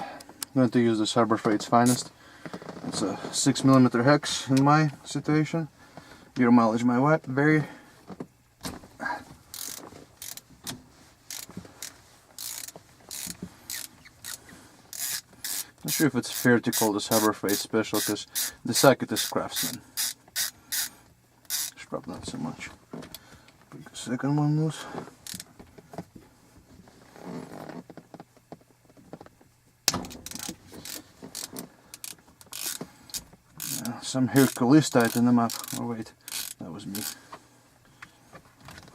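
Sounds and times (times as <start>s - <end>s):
ratchet pawl clicking: 9.5s - 10.5s, 11.3s - 21.8s, 25.2s - 25.5s, 30.2s - 37.2s.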